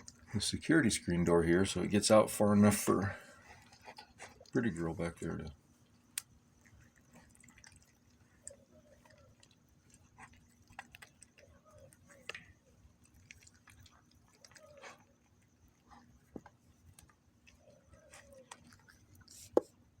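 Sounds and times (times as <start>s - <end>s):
cat chewing food: 0.0s - 0.6s, 2.3s - 20.0s.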